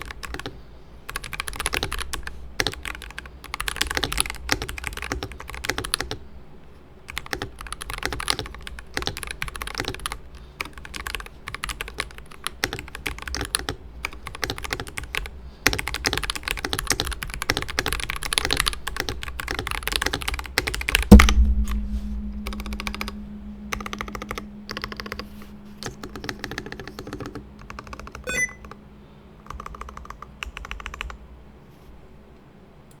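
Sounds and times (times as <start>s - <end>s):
mechanical keyboard typing: 0.0s - 6.2s, 7.1s - 21.0s, 29.5s - 31.2s
steady low hum: 20.0s - 31.6s
loud thump: 21.1s - 26.2s.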